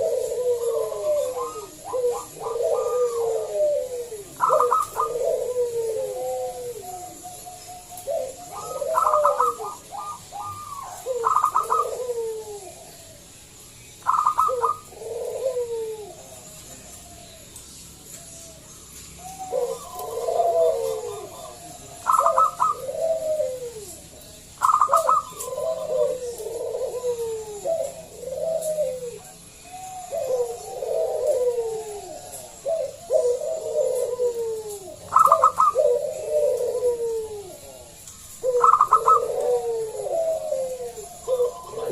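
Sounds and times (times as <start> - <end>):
dove cooing: 0.0 - 41.9.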